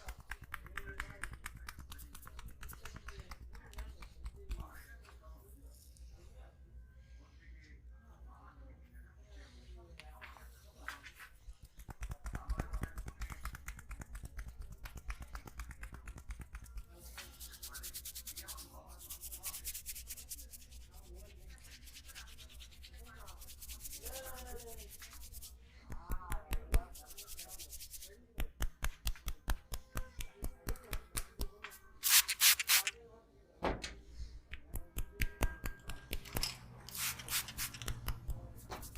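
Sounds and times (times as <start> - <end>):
regular hand slaps: 0.0 - 4.7, 11.5 - 18.2, 24.8 - 31.6, 34.5 - 36.3, 37.8 - 38.9
hands rubbing and tapping skin: 0.0 - 4.9, 10.2 - 32.9, 34.5 - 38.9.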